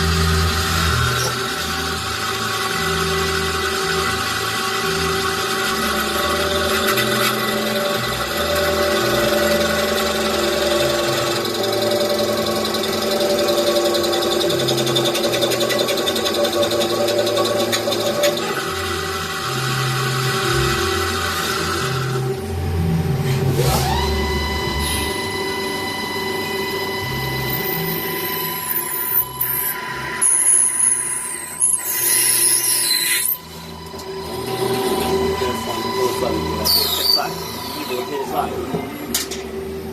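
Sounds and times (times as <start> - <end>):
metal lathe machine whine: 0.0 - 39.9
high squealing: 23.2 - 39.2.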